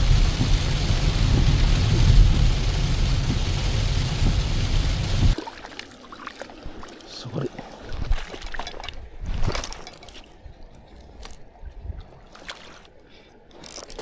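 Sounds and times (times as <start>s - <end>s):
wind or water rushing on microphone: 0.0s - 5.6s, 7.5s - 9.6s.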